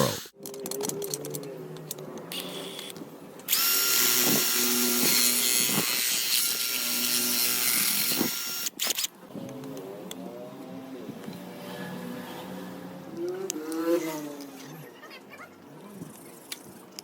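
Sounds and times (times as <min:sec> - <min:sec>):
electric power tool whining: 0:03.5 - 0:09.0.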